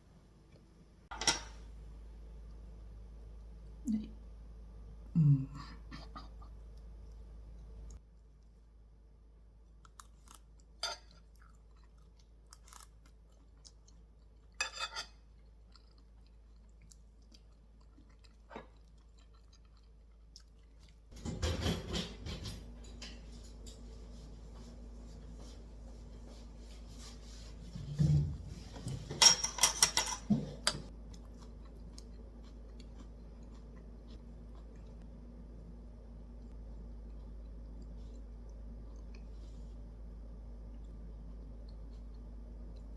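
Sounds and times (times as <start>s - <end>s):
steady low hum: 0.0s - 42.9s
dishes and utensils clattering: 1.1s - 1.6s, 21.2s - 23.9s, 27.9s - 30.9s.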